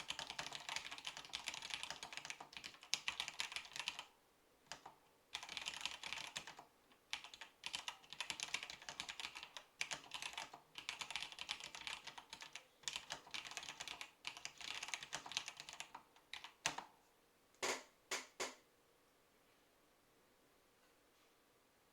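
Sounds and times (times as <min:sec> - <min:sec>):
fast typing on a keyboard: 0:00.0 - 0:04.1, 0:04.7 - 0:16.9.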